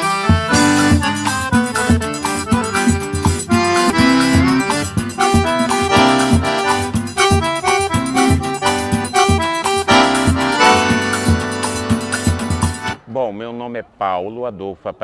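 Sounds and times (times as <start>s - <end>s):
accordion dance music: 0.0s - 13.1s.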